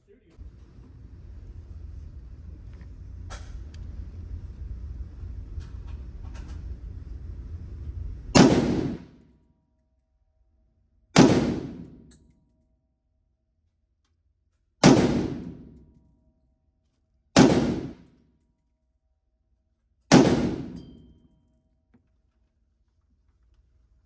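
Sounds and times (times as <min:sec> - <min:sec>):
rifle shots with echo: 0:08.4 - 0:09.2, 0:11.2 - 0:12.1, 0:14.8 - 0:15.8, 0:17.4 - 0:18.1, 0:20.1 - 0:21.1.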